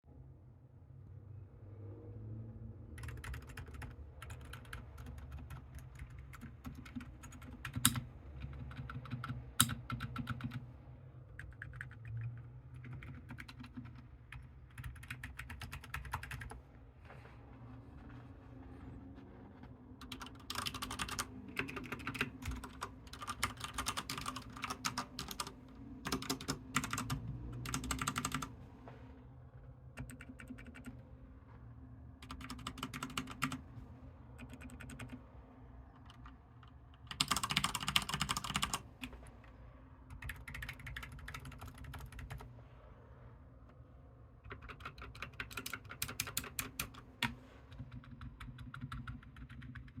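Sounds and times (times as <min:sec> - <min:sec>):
mechanical keyboard typing: 0:03.0 - 0:10.6, 0:11.4 - 0:16.6, 0:20.0 - 0:28.5, 0:30.0 - 0:31.0, 0:32.2 - 0:33.6, 0:34.4 - 0:35.2, 0:35.9 - 0:39.2, 0:40.1 - 0:42.5, 0:44.4 - 0:50.0.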